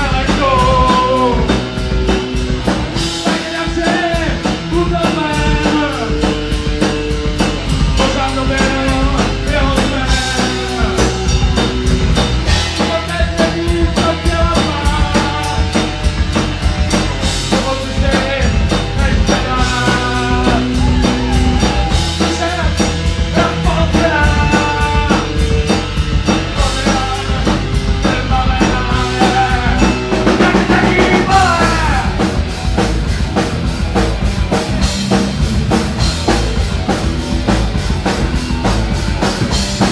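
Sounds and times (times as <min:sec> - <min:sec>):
rock band music: 0:00.0 - 0:39.9.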